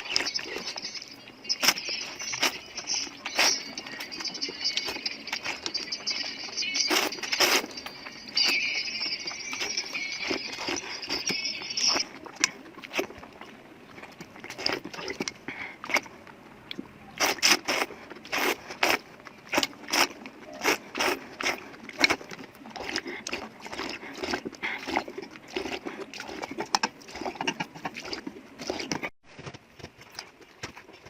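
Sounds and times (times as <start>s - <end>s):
crunchy chewing: 0.0s - 29.1s
slurping noodles: 6.8s - 7.8s, 17.2s - 29.1s.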